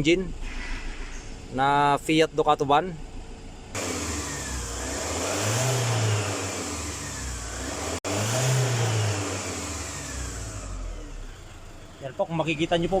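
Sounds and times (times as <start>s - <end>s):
diesel engine revving: 3.7s - 13.0s.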